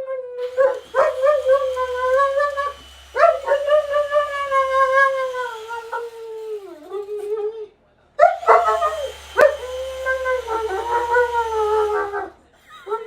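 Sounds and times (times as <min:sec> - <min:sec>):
dog howling: 0:00.4 - 0:07.5, 0:08.2 - 0:12.4.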